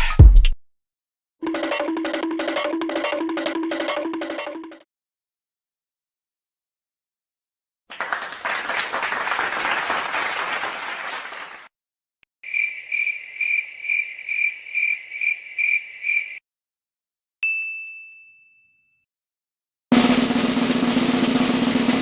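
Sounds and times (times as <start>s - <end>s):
cricket chirping: 12.4s - 16.4s
bright ding: 17.4s - 19.0s.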